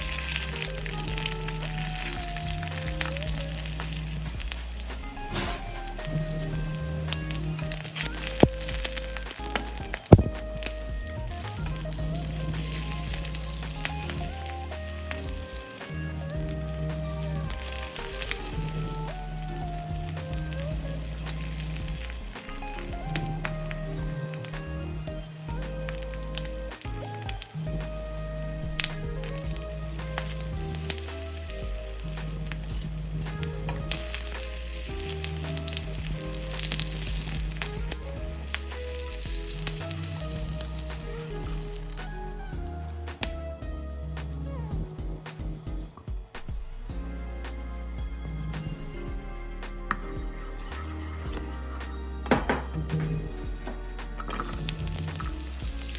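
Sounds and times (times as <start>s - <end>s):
food sizzling in oil: 0.0s - 43.4s, 48.4s - 55.9s
background music: 0.0s - 55.9s.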